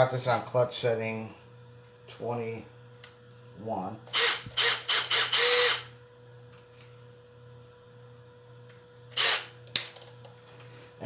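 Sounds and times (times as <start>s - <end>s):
drill motor whining: 4.1s - 5.9s, 9.1s - 9.6s.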